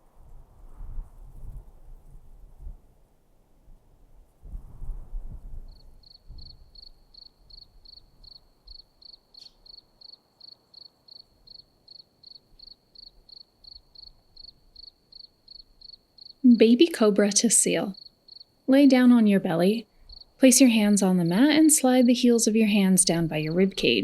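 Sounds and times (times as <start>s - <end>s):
cricket chirping: 5.7s - 24.0s.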